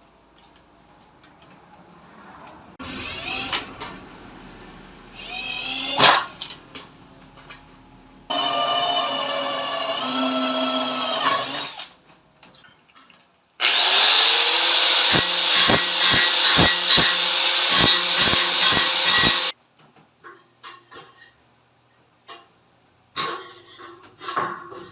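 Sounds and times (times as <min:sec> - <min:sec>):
electric power tool whining: 0:13.6 - 0:19.6.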